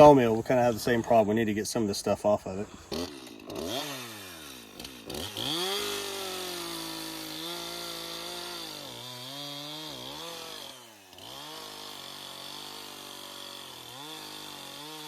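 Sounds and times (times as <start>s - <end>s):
chainsaw cutting through log: 2.5s - 15.0s.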